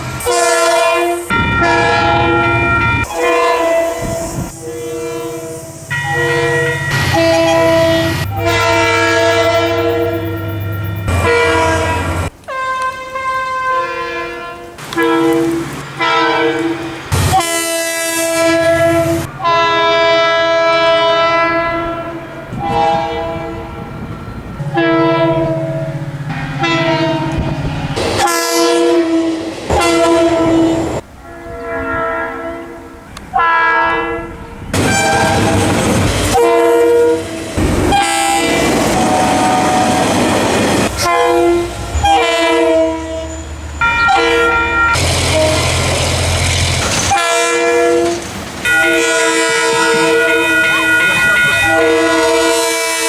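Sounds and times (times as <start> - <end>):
train air horn blasts: 0.2 - 23.9, 24.6 - 46.0, 46.9 - 53.0
train wheels clattering: 34.8 - 42.3, 43.4 - 51.6.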